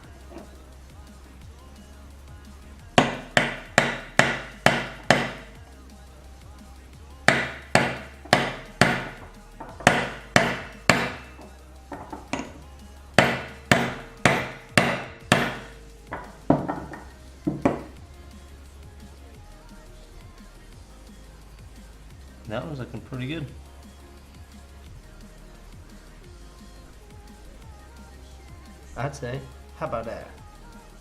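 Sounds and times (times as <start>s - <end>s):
hammer striking metal: 3.0s - 5.6s, 7.3s - 12.6s, 13.2s - 18.0s.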